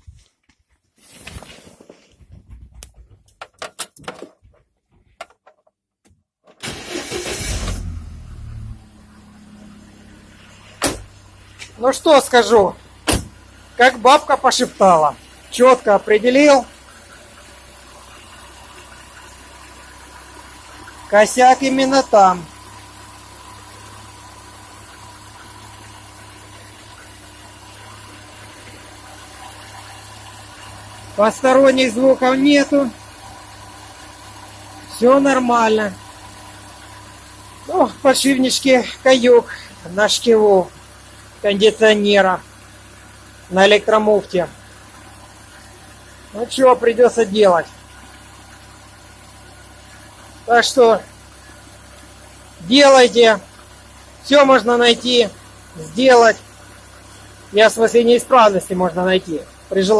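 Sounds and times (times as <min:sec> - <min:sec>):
car engine starting and idling: 0:06.5 - 0:59.9.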